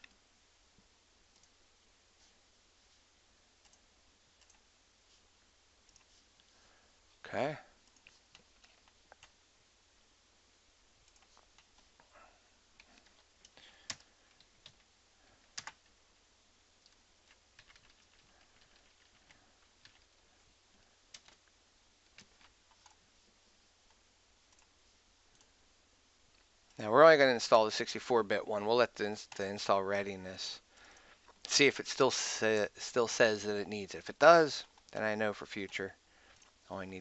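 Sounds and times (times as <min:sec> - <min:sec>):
computer keyboard and mouse clicks: 0:04.4 - 0:04.6, 0:11.0 - 0:11.9, 0:15.5 - 0:15.9, 0:16.8 - 0:20.1, 0:21.1 - 0:21.4, 0:22.0 - 0:23.0.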